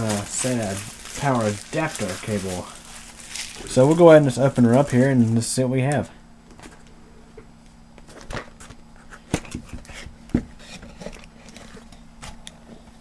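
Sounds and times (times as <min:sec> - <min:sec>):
box packaging rustling: 0:00.0 - 0:05.4.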